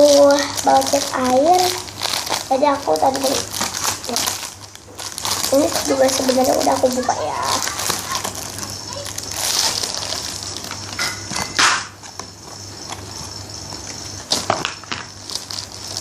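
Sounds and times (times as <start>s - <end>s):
packaging crinkling and rustling: 0.0s - 16.0s.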